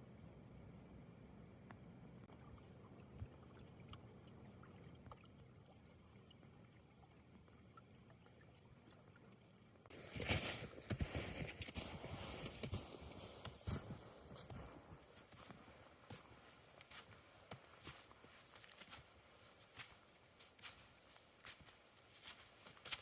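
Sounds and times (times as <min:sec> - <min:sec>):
footsteps crunching in snow: 0:09.9 - 0:23.0.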